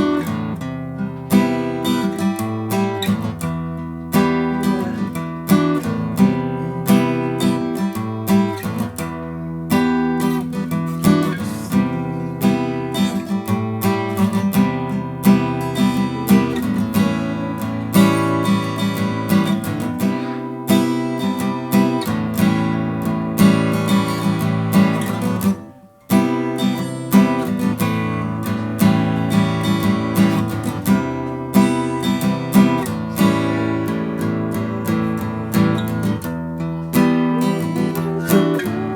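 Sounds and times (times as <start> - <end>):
acoustic guitar chords: 0.0 - 38.9.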